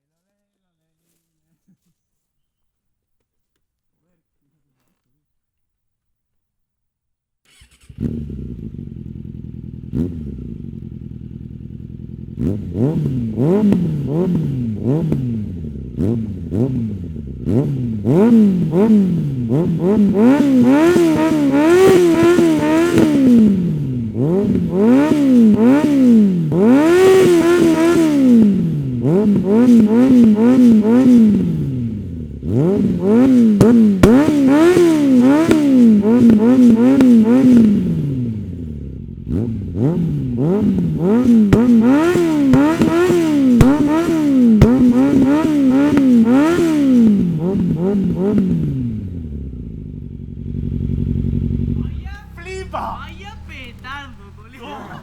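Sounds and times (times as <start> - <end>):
motorcycle engine idling and revving: 7.5 - 55.0
exhaust pops and crackles: 32.9 - 37.2, 41.4 - 46.1, 51.6 - 54.6.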